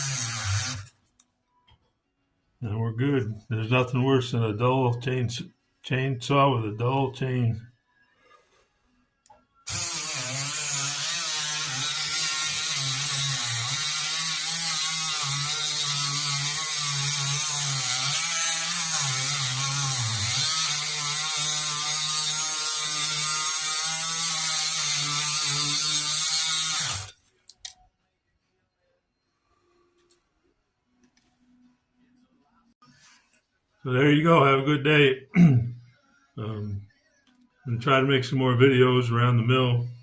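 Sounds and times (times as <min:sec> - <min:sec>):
rotary tool grinding chain: 0:00.0 - 0:00.9, 0:09.7 - 0:27.2.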